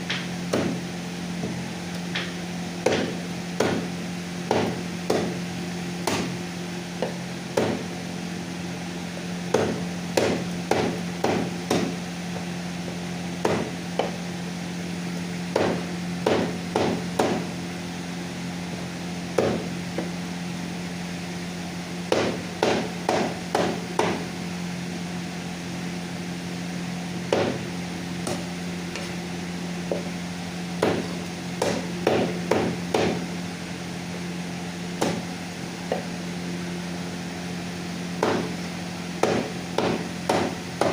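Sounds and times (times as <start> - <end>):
steady low hum: 0.0 - 40.9
cleaver chopping chicken: 0.1 - 5.4, 6.0 - 6.4, 7.0 - 7.9, 9.5 - 12.0, 13.4 - 14.2, 15.5 - 17.5, 19.4 - 20.1, 22.1 - 24.3, 27.3 - 29.2, 30.8 - 33.3, 35.0 - 36.2, 38.2 - 38.6, 39.2 - 40.9.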